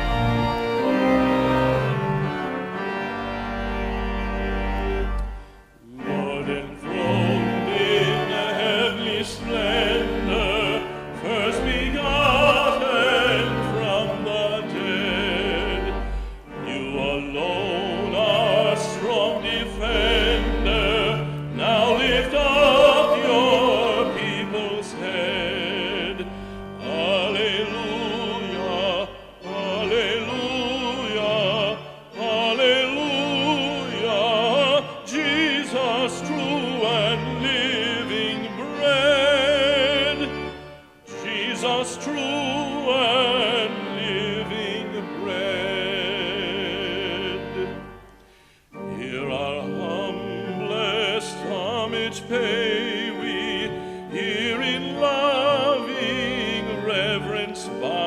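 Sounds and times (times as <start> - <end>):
person singing a hymn with vibrato: 0.0 - 58.0
sustained keyboard accompaniment: 0.0 - 58.0
singer breathing: 5.3 - 5.8, 16.0 - 16.5, 26.3 - 26.7, 48.2 - 48.8.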